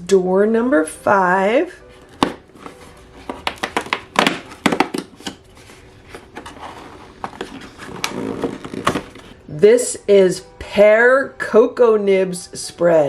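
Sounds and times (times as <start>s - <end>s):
paper rustling: 2.0s - 9.4s
cardboard tearing and crinkling: 2.4s - 9.4s.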